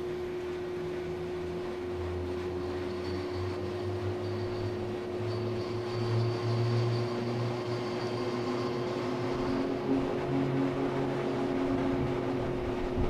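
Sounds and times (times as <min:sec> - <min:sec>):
aerial tramway cabin hum: 0:00.0 - 0:13.0.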